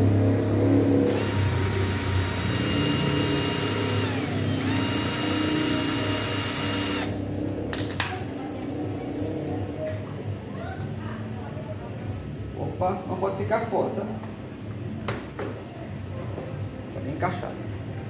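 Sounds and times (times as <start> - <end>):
electric drill whining: 1.1 - 7.2.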